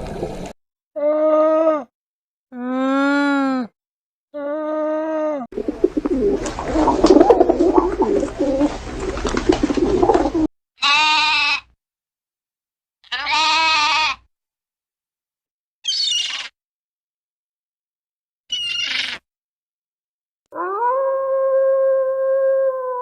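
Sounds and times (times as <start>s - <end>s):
overlapping animal calls: 5.6s - 10.5s
short bleats: 10.8s - 11.7s, 13.0s - 14.3s, 16.1s - 16.6s.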